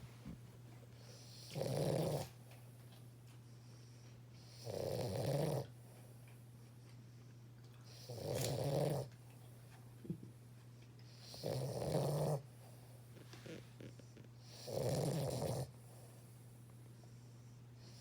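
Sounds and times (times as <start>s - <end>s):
puppy snoring: 1.0s - 2.4s, 4.4s - 6.0s, 7.8s - 9.2s, 11.1s - 16.3s.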